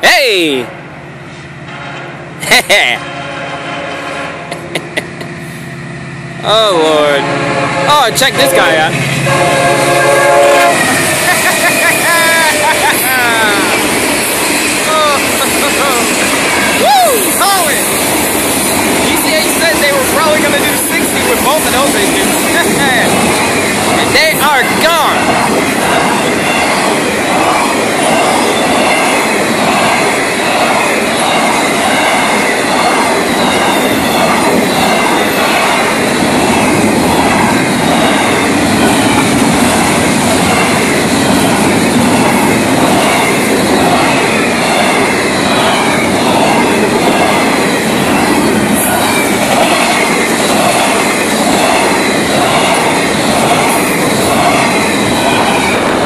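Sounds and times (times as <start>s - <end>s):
freight train rumbling past: 0.0s - 56.0s
wheels clacking over rail joints: 13.3s - 56.0s.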